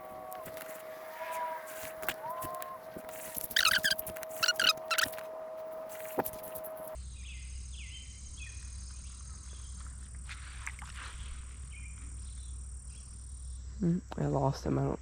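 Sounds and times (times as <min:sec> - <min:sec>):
falling bird calls: 0:00.0 - 0:05.2
high insect drone: 0:00.0 - 0:09.8.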